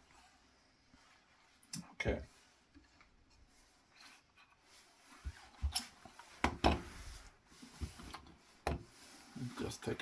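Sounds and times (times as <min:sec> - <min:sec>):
light rubbing and taps: 0:02.6 - 0:10.0.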